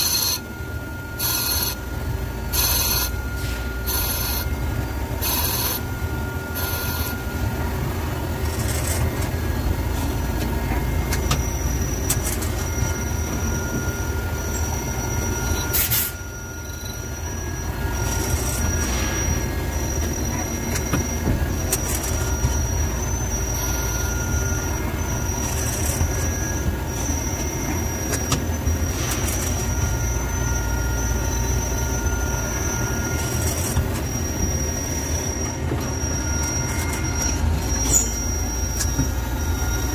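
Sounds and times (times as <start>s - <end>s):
high squealing whine: 0.0s - 39.9s.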